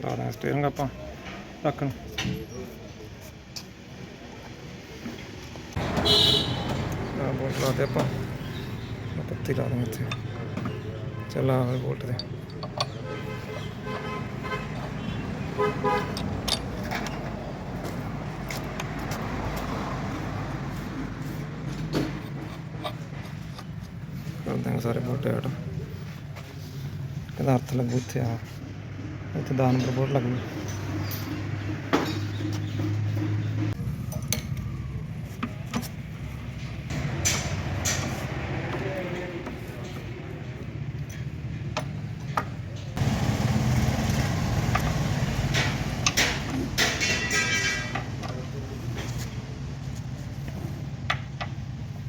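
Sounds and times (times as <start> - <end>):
vehicle horn tooting: 5.8 - 6.9, 12.9 - 16.3
wrench and bolts clinking on metal: 11.6 - 13.1, 16.1 - 17.4, 45.5 - 48.4
metallic clicks and knocks: 11.9 - 13.2, 16.0 - 19.2, 44.7 - 48.4.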